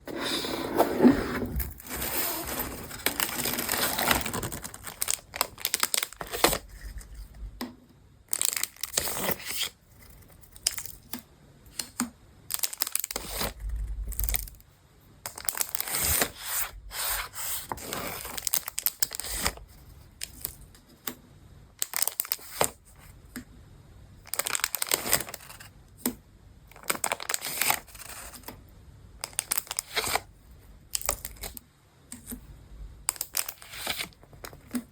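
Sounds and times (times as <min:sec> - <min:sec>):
paper tearing: 0:00.2 - 0:05.2
plastic wrapping crinkling: 0:01.4 - 0:07.1, 0:24.2 - 0:25.6.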